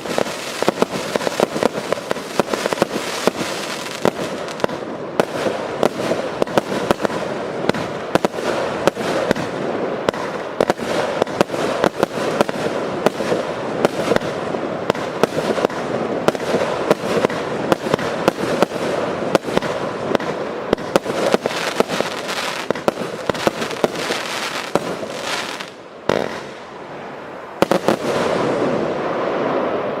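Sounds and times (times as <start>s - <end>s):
cake firework shots and bursts: 0.0s - 26.6s.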